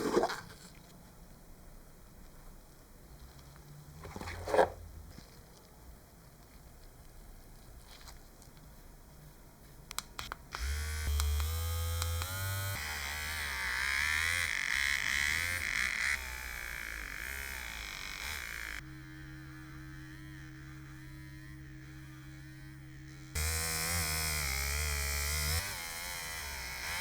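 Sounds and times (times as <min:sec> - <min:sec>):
small electric motor tool whining: 0:10.5 - 0:27.0.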